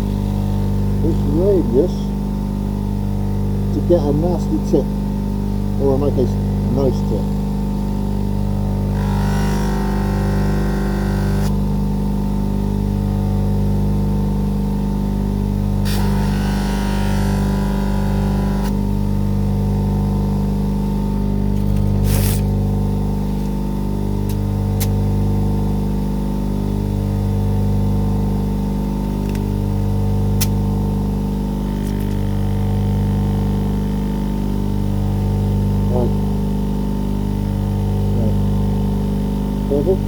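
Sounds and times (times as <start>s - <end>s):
buffing motor running: 8.7s - 11.8s, 15.6s - 19.4s, 21.4s - 25.1s, 28.9s - 36.5s
knife blade scuffing on mop: 21.7s - 22.5s.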